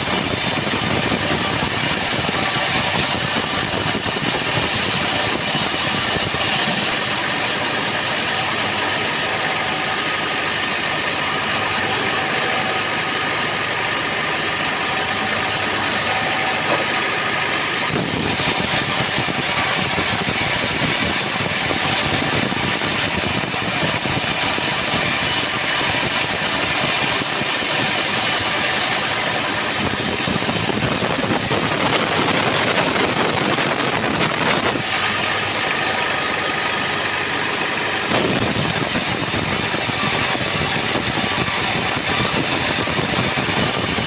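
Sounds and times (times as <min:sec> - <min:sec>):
sawmill engine droning: 0:00.0 - 0:44.0
band blade cutting log: 0:17.8 - 0:28.9, 0:29.7 - 0:34.9.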